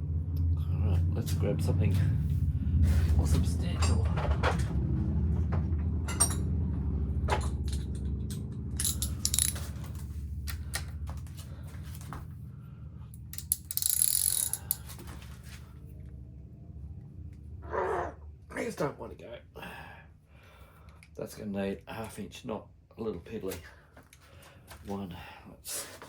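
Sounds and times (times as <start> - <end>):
low rumble: 0.0 - 13.6, 14.7 - 18.6
metal tools clinking: 3.6 - 4.7, 6.1 - 6.5, 7.3 - 10.6, 13.2 - 15.4
socket ratchet clicking: 8.8 - 10.9, 13.2 - 14.9.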